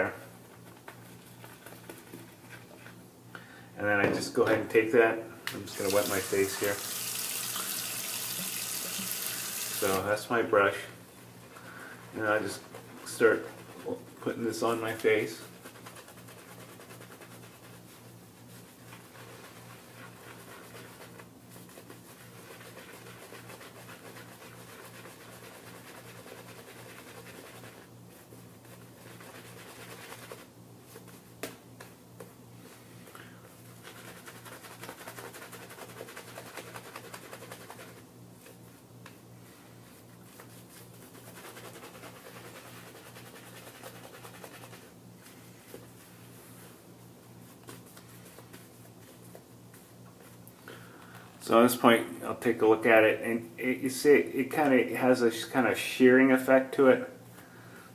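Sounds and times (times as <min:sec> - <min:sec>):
shaving brush scrubbing lather: 0:05.7 - 0:10.3, 0:12.1 - 0:30.5, 0:33.8 - 0:38.5, 0:39.6 - 0:46.7.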